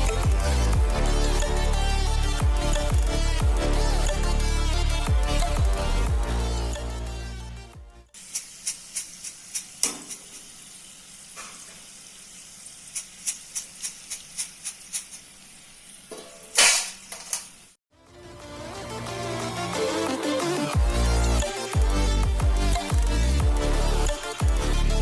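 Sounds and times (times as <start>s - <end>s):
oil sizzling in a pan: 8.2s - 17.8s.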